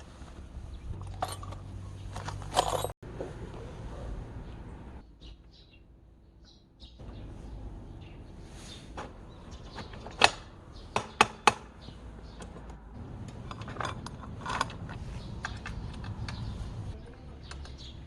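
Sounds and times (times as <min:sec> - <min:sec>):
metal tools clinking: 0:00.9 - 0:03.0, 0:13.2 - 0:16.9
sharp metallic knocks: 0:09.8 - 0:12.6.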